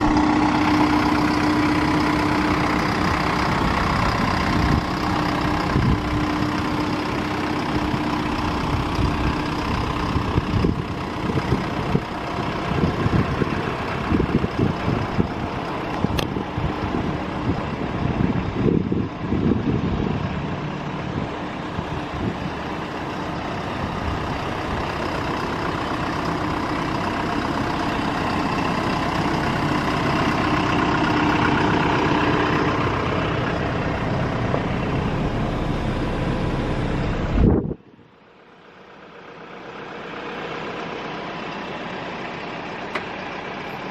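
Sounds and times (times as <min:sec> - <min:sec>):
large vehicle engine running: 0:00.0 - 0:43.9
engine cutting off with a thump: 0:24.5 - 0:37.8, 0:40.0 - 0:43.9.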